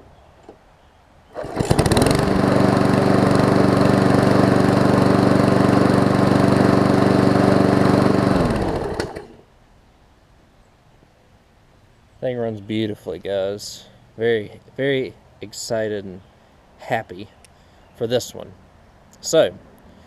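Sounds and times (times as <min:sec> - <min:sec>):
lawn mower engine running: 0:01.3 - 0:09.4.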